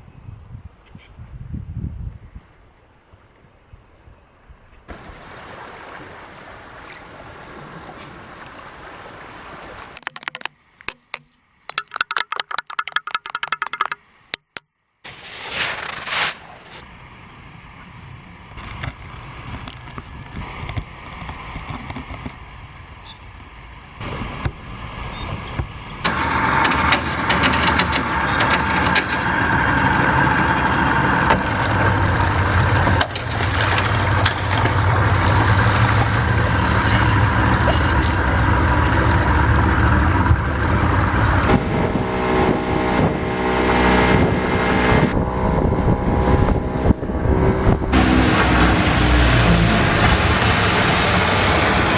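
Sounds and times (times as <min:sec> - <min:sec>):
engine running: 0:24.0 - 0:51.9.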